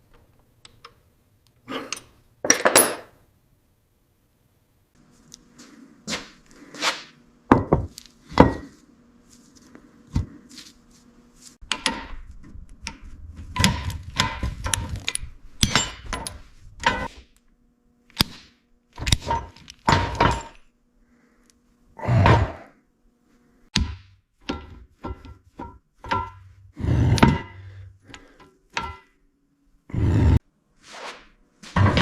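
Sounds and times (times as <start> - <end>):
faint steady hum: 3.0 - 30.8
knocks and clanks of tools: 7.5 - 8.8, 11.6 - 17.1, 19.0 - 20.6, 23.8 - 29.2.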